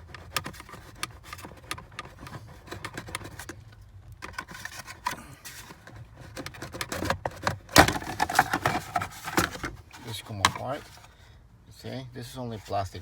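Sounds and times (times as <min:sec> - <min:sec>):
plastic clicks and rattles: 0:00.0 - 0:09.8.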